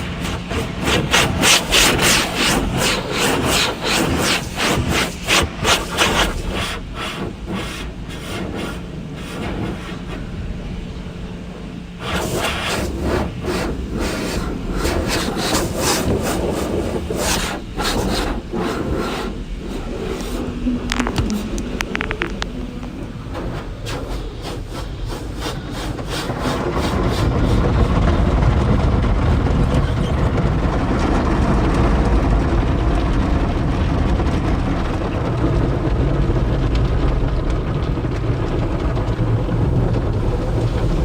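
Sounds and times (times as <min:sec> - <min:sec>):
car wash brushes scrubbing: 0:00.0 - 0:28.8, 0:38.0 - 0:41.0
steady low hum: 0:00.0 - 0:41.0.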